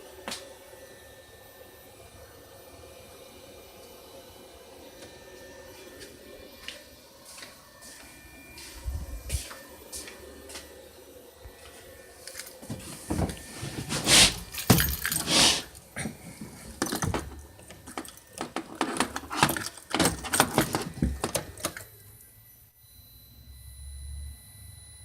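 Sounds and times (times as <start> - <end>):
clicking and jangling handling noises: 13.9 - 21.9.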